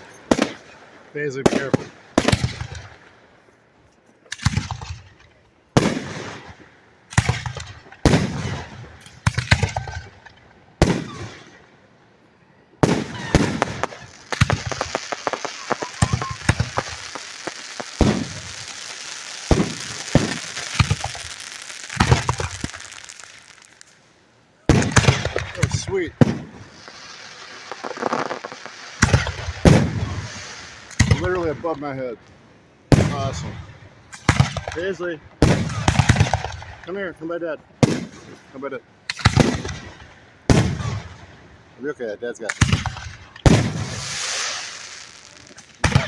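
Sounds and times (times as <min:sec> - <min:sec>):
firework shells bursting: 0:12.8 - 0:37.0, 0:42.5 - 0:46.0
crackling fizz with rapid pops: 0:13.2 - 0:24.0, 0:24.8 - 0:31.4, 0:43.7 - 0:46.0.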